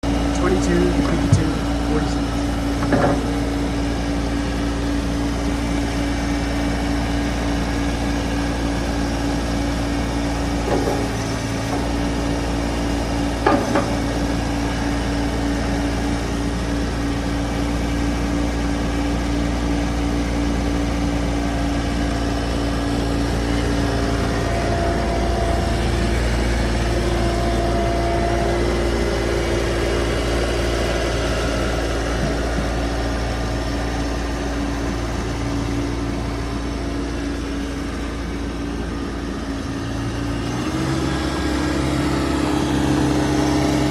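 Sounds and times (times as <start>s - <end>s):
skid steer engine running: 0.0s - 43.9s
short knocks: 10.6s - 12.6s, 13.4s - 14.4s.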